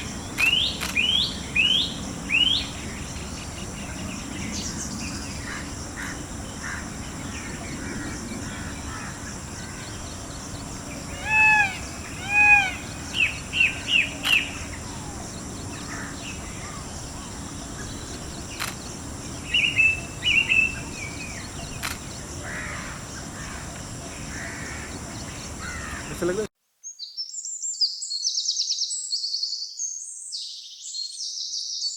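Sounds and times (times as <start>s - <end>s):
high background hiss: 0.0s - 26.5s
small birds chirping: 0.0s - 31.9s
peacock wailing calls: 7.8s - 17.0s, 19.6s - 26.3s.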